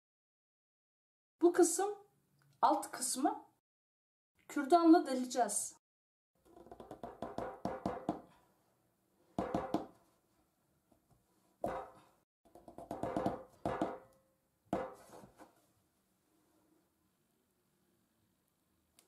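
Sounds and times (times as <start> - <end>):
quick taps and knocks: 6.5 - 8.3.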